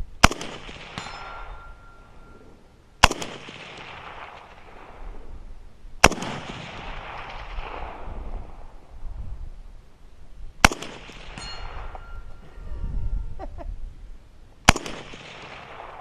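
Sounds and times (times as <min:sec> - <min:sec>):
rifle shots with rolling echo: 0:00.2 - 0:08.9, 0:10.6 - 0:12.4, 0:14.6 - 0:16.0.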